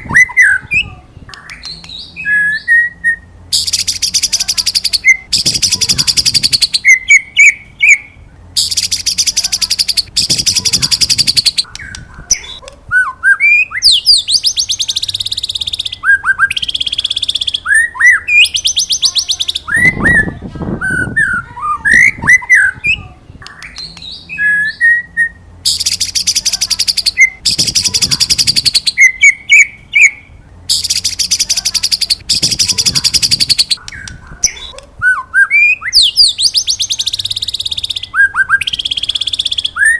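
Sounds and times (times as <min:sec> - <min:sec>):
bird buzzing rattled trills: 0:03.5 - 0:07.6, 0:08.6 - 0:12.5, 0:25.7 - 0:29.7, 0:30.7 - 0:34.6.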